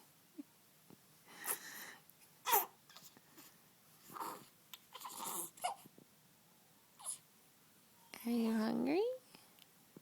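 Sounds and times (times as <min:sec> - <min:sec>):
baby grunting and straining: 0:02.4 - 0:03.1, 0:04.0 - 0:05.9.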